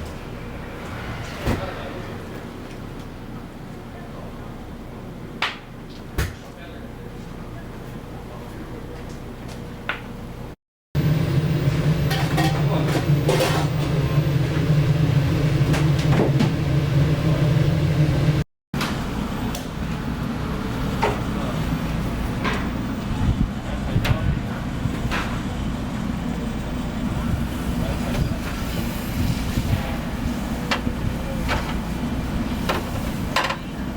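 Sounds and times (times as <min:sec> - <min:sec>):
low mechanical hum: 0:00.0 - 0:33.9.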